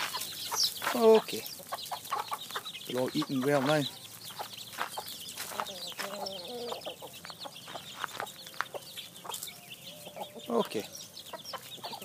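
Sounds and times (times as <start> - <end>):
chickens clucking: 0.0 - 12.0.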